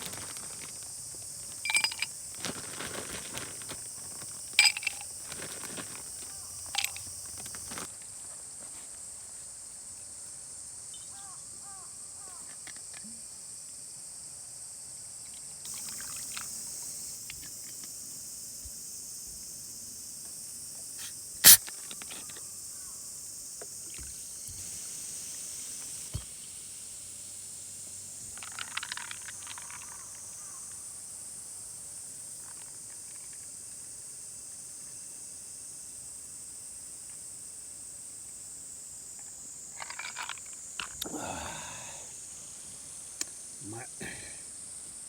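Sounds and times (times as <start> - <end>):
rustling and clicking: 0.0 - 7.9
insects droning: 0.0 - 45.0.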